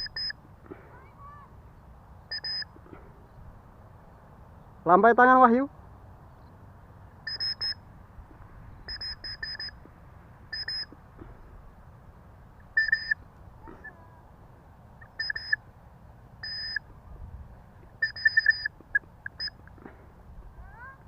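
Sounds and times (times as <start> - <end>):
bird calling in high beep-like notes: 0.0 - 0.4, 2.2 - 2.8, 7.2 - 7.8, 8.8 - 9.8, 10.5 - 11.0, 12.6 - 13.2, 15.0 - 15.6, 16.4 - 16.9, 18.0 - 19.7.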